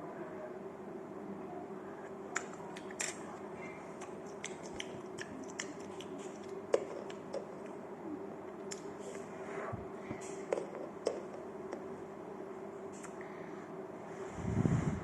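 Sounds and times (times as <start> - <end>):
steady low hum: 0.0 - 15.0
chewing: 3.9 - 7.8.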